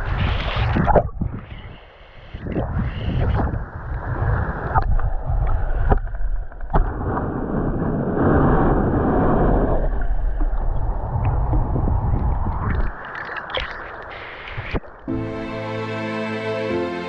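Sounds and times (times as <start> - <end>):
wind buffeting microphone: 0.0 - 13.6
lake water washing and gurgling: 2.4 - 15.6.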